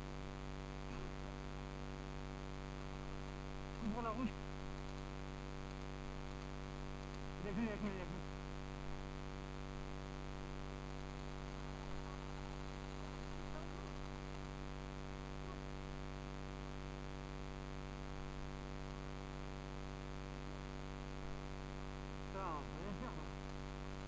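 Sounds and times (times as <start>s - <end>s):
electrical hum: 0.0s - 24.0s.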